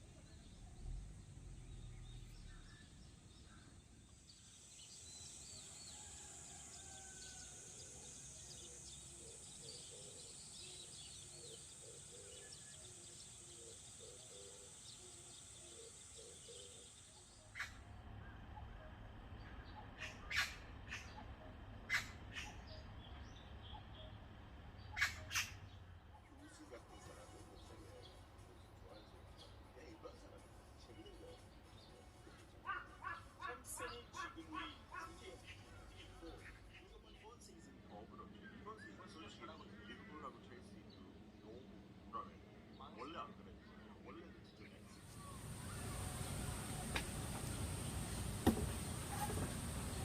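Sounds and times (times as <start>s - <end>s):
birds chirping: 0.0s - 50.0s
faint steady hiss: 44.9s - 50.0s.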